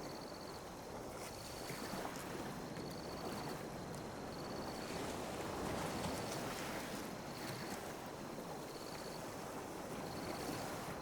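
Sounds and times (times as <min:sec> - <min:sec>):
sea waves lapping on beach: 0:00.0 - 0:11.0.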